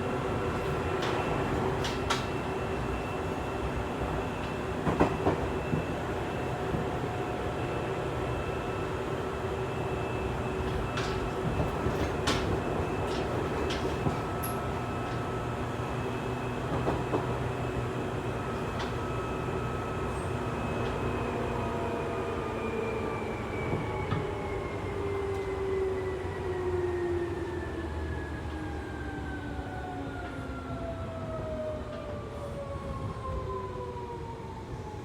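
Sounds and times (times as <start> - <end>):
train running rumble: 0.0 - 7.7, 9.0 - 22.1.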